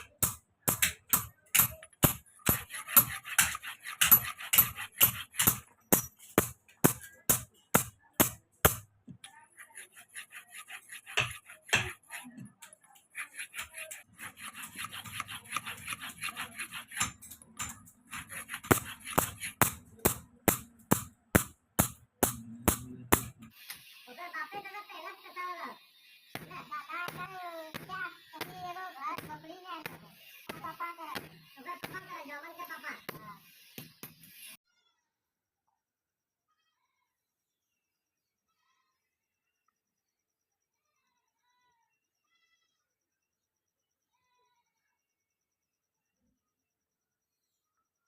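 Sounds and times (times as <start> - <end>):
hammer striking steel on anvil: 0.0 - 8.9, 15.5 - 23.5.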